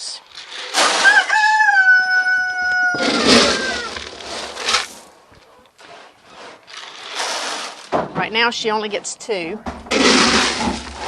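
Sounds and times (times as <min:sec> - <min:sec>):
dry feed pouring into trough: 0:00.4 - 0:01.8, 0:02.9 - 0:05.0, 0:09.9 - 0:11.0
rooster crowing: 0:01.0 - 0:04.0.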